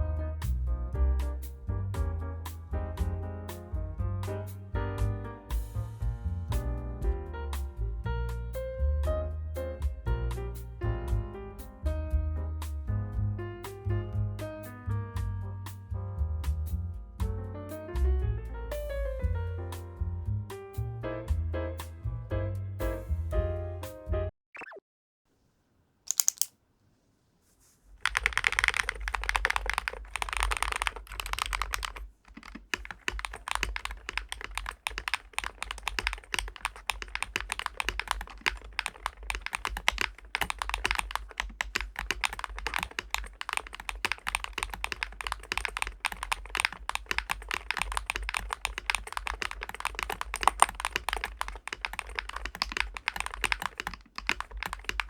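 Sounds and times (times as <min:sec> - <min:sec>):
keyboard keystroke clicking: 0:26.1 - 0:26.6, 0:28.0 - 0:55.0.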